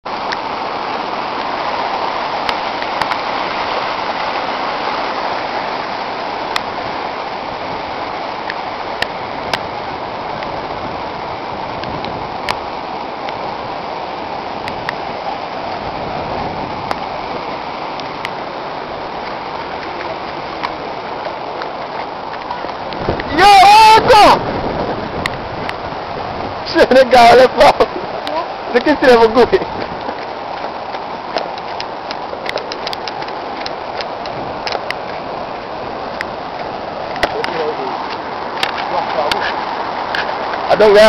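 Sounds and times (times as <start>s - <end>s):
floodwater rushing: 0.0s - 41.0s.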